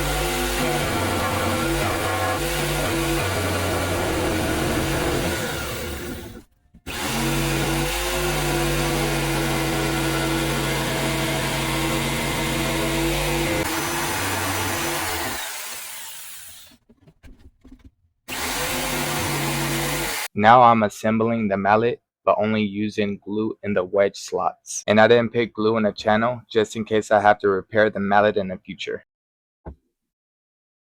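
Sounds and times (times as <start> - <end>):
power saw running: 0.0 - 16.9, 18.3 - 20.3.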